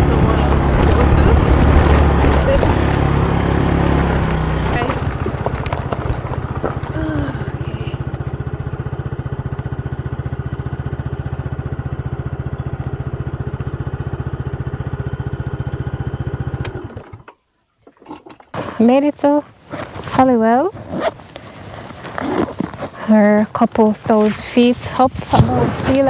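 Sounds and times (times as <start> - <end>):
scooter engine idling: 0.0 - 16.9.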